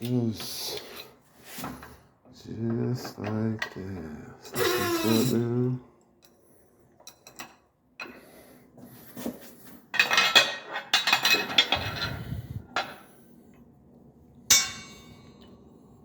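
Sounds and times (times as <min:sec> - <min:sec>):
steel parts clanking and rattling: 0:10.0 - 0:13.0, 0:14.5 - 0:15.2.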